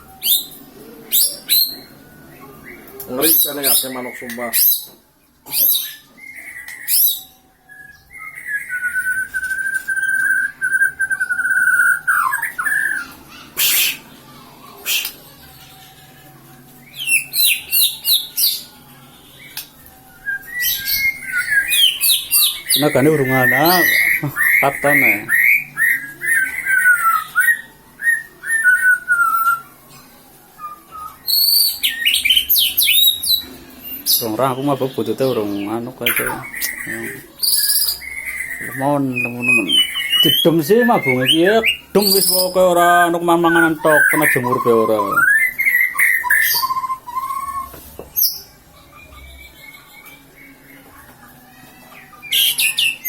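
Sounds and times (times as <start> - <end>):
songbird calling: 20.5 - 29.6, 34.1 - 48.5.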